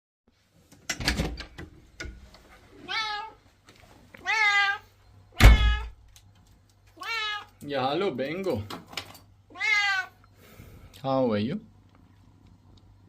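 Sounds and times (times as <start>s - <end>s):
cat meowing: 2.8s - 3.4s, 4.2s - 6.0s, 7.0s - 7.5s, 9.5s - 10.2s.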